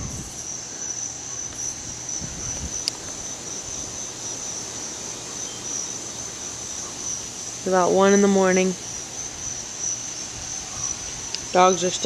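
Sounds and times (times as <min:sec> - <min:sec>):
wind on microphone: 0:00.0 - 0:00.6, 0:01.5 - 0:05.2, 0:10.2 - 0:11.9
crickets trilling: 0:00.0 - 0:12.0.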